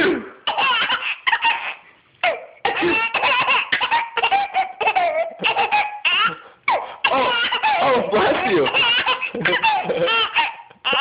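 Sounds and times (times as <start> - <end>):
young child giggling: 2.2 - 6.4, 7.1 - 11.0.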